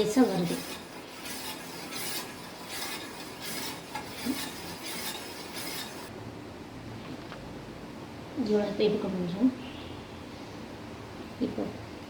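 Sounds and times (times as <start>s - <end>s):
coffee boiling: 0.0s - 6.1s
spoon scraping in a pot: 0.0s - 6.1s.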